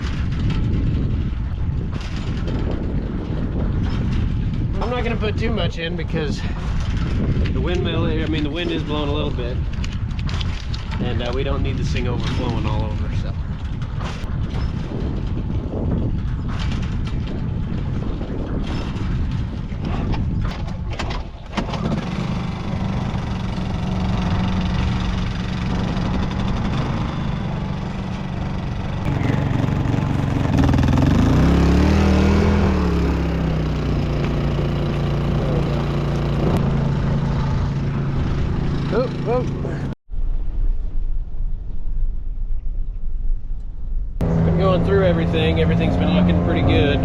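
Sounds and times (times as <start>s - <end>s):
wind noise: 0.0s - 47.0s
generator engine running: 21.5s - 39.9s
louder engine rising and falling: 21.6s - 40.0s, 44.2s - 47.0s.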